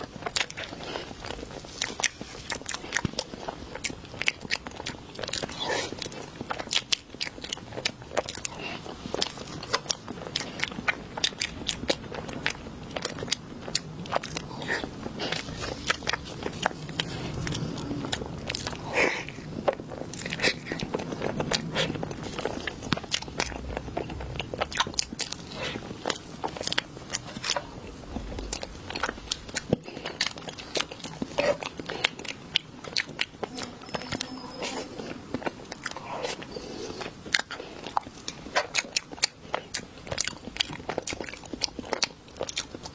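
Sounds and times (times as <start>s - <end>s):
person chewing crunchy food: 0.0s - 42.9s.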